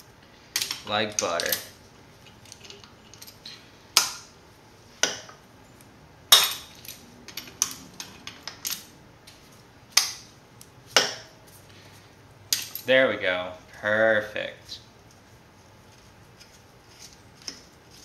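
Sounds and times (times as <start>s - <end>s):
metal tools clinking: 0.6s - 3.6s, 12.5s - 12.9s.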